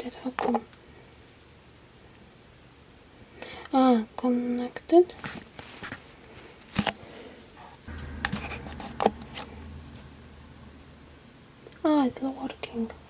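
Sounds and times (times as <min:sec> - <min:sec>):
faint low hum: 0:07.3 - 0:13.0.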